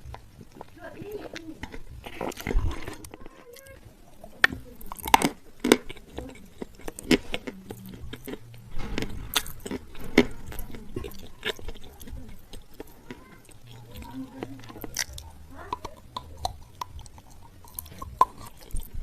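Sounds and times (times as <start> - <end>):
crunchy chewing: 0.0 - 19.0.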